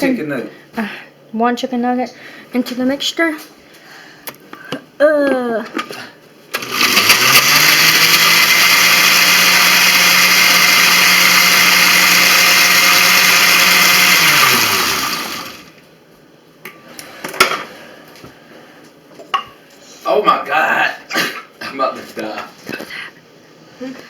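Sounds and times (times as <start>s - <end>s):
blender motor running: 6.6s - 15.8s.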